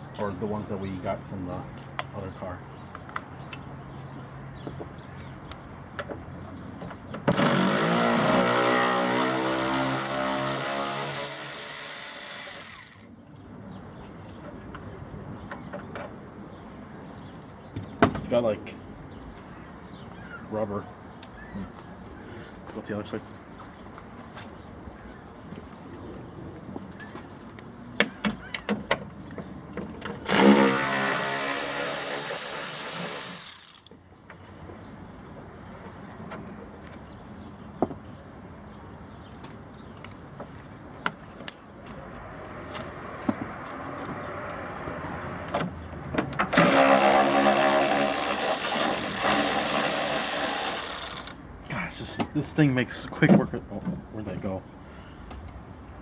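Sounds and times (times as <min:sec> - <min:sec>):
handheld power tool running: 0:07.3 - 0:13.0, 0:30.3 - 0:33.9, 0:46.6 - 0:51.4.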